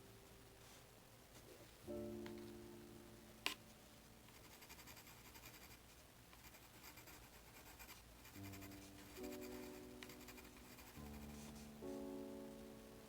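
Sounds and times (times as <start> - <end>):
soft piano chord: 0.0 - 4.6, 8.2 - 13.0
pen scratching on paper: 4.3 - 11.7.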